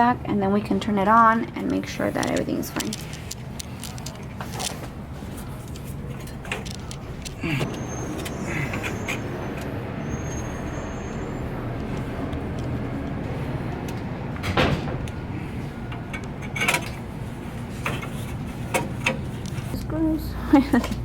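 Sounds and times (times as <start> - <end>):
steady low hum: 0.0 - 21.0
metal knocks and clanks: 11.8 - 19.7.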